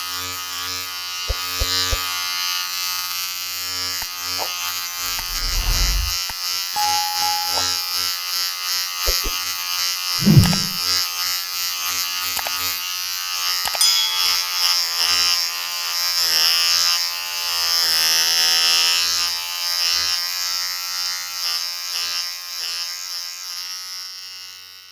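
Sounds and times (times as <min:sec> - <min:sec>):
low bumps: 0:05.0 - 0:06.2.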